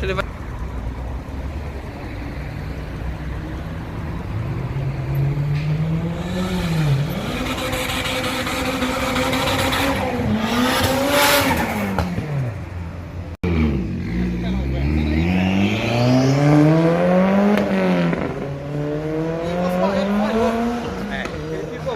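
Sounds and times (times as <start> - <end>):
car engine accelerating hard: 4.2 - 12.6, 13.4 - 21.9.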